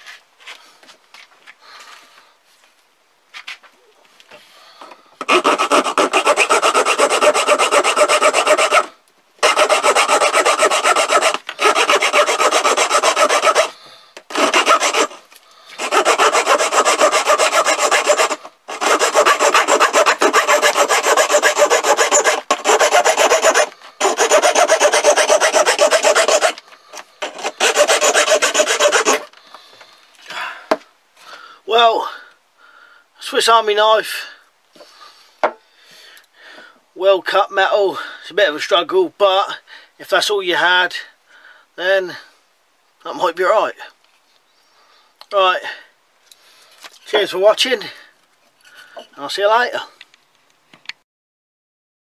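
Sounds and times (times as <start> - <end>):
small saw cutting a steel nail: 5.2 - 15.2, 15.8 - 29.3.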